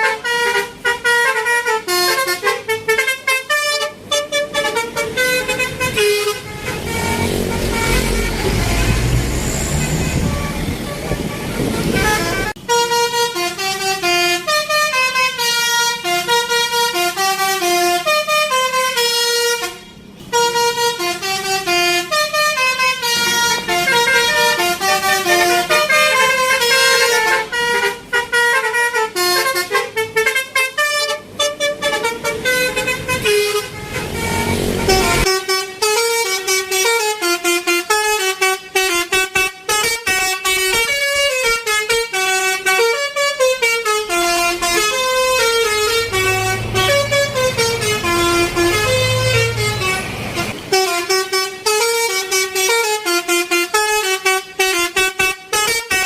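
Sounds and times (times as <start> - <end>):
multi-tone air horn tune: 0.0 - 56.0
low engine rumble: 4.1 - 12.7, 23.2 - 35.3, 44.1 - 50.8.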